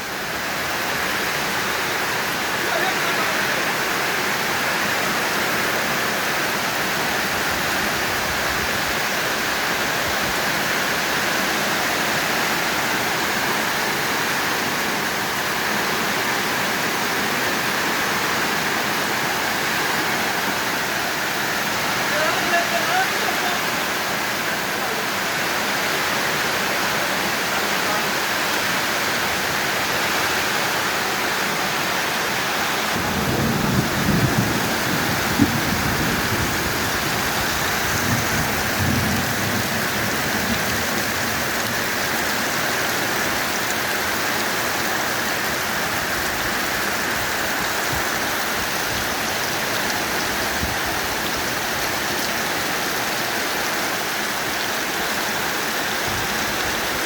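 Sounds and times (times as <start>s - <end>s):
heavy rain pouring: 0.0s - 57.0s
low thunder rumbles: 32.9s - 41.8s.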